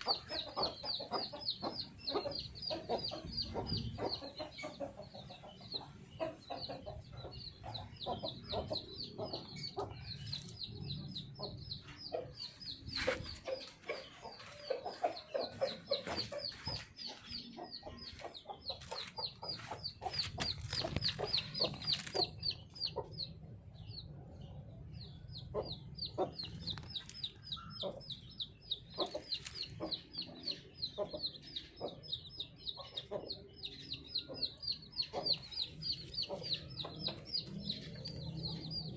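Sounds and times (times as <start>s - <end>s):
baby chicks peeping: 0.0s - 38.9s.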